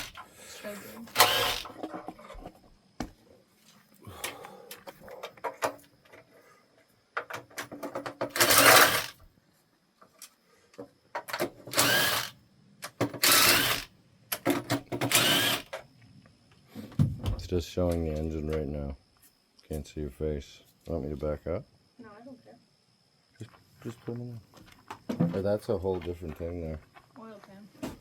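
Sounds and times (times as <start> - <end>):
handheld power tool running: 0.0 - 0.2, 1.1 - 1.8, 8.3 - 9.2, 11.7 - 12.4, 13.0 - 13.9, 14.9 - 15.8.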